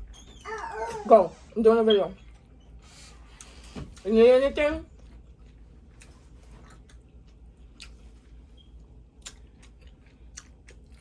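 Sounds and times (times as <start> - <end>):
faint chewing: 4.9 - 8.5, 9.1 - 11.0.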